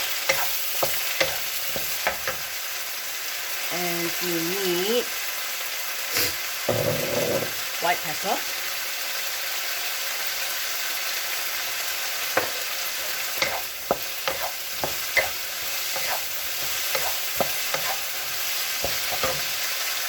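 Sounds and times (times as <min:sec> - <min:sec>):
food sizzling in a frying pan: 0:00.0 - 0:20.0
spatula scraping and knocking pan: 0:00.2 - 0:02.5, 0:12.3 - 0:19.7.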